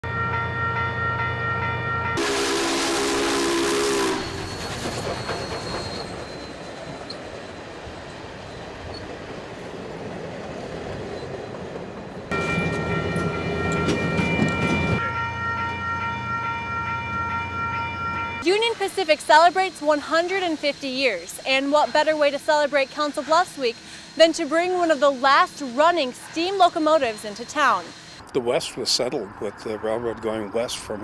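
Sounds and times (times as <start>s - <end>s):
train rushing and rumbling: 1.7s - 30.9s
steam locomotive whistle: 2.2s - 6.6s, 14.6s - 28.0s.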